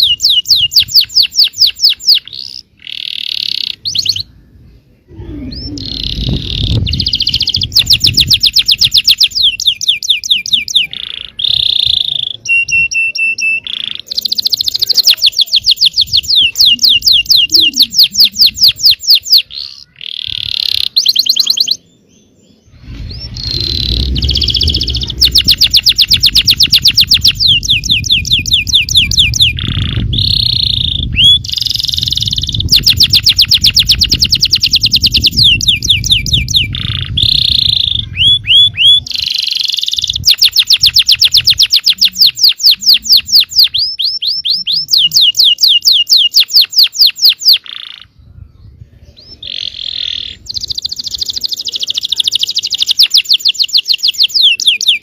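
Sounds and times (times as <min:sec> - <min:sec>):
canary singing trills: 0:00.0 - 0:55.0
low background rumble: 0:21.9 - 0:39.0.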